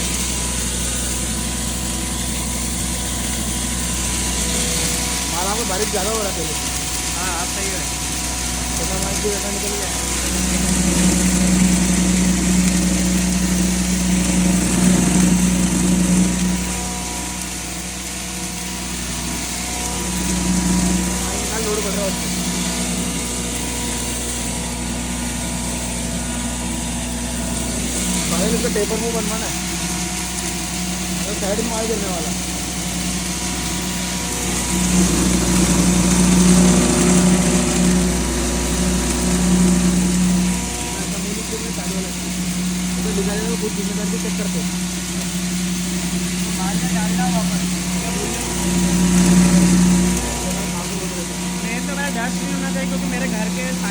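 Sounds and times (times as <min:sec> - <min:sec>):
feed grinder running: 0:00.0 - 0:53.9.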